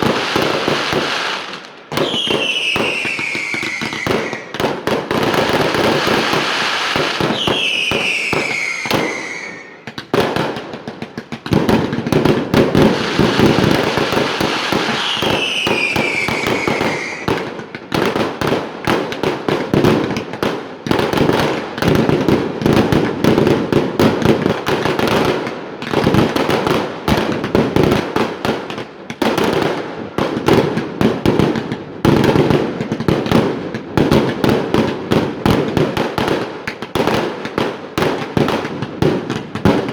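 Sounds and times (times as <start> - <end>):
fireworks bangs and crackles: 0.0 - 39.9
firework whistles falling in pitch: 1.1 - 4.6, 6.0 - 9.9, 14.6 - 17.4.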